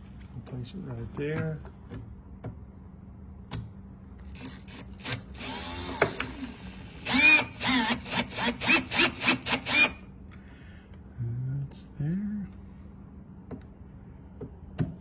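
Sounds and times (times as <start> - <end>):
power drill whirring: 4.4 - 10.1.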